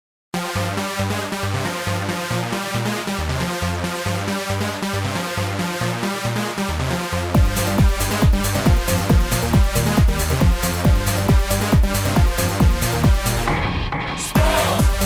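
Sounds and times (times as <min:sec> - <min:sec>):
eurodance synth bass and chords: 0:00.4 - 0:15.0
steady kick drum: 0:07.4 - 0:15.0.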